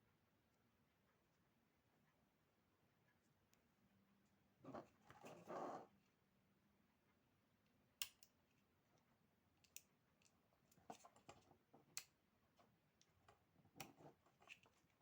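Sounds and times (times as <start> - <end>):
faint clicks and taps: 7.6 - 15.0.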